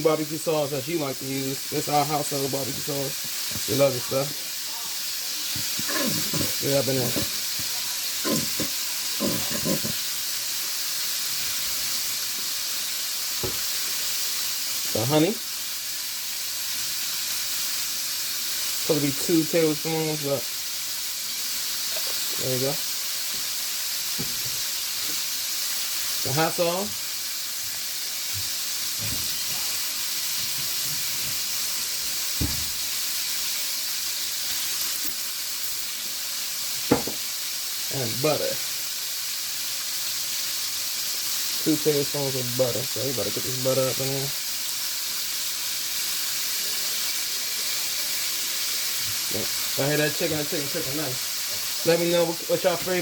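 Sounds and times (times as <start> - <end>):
deep-frying sizzling hiss: 0.0 - 53.0
single knock: 36.9 - 37.2.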